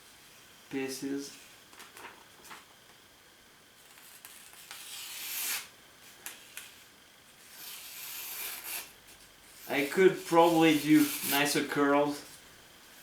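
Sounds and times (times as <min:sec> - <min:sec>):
knife shaving wood: 0:09.6 - 0:11.6.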